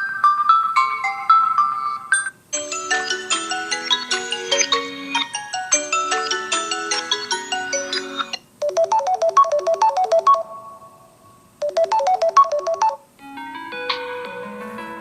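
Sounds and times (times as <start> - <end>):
ringtone with short bright notes: 0.0 - 10.5, 11.6 - 13.0
melodic phone ringtone: 0.0 - 10.7, 11.6 - 13.0.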